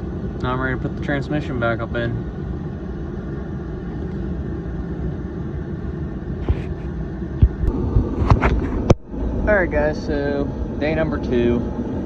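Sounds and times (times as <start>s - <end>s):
heater low rumble: 0.0s - 12.0s.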